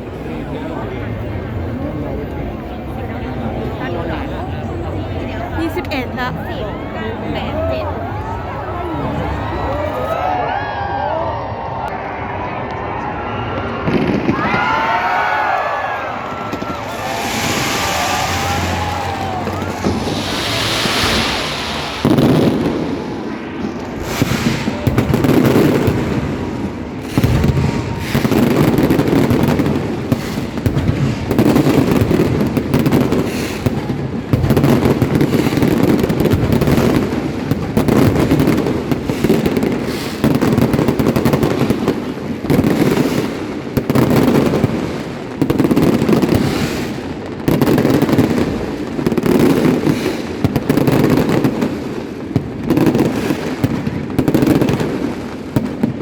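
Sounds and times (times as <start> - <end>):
fireworks bangs and crackles: 0.0 - 10.2, 13.6 - 56.0
low booming: 16.2 - 25.2.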